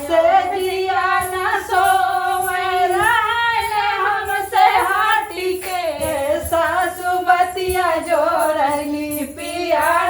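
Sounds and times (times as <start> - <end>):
women singing folk song: 0.0 - 10.0.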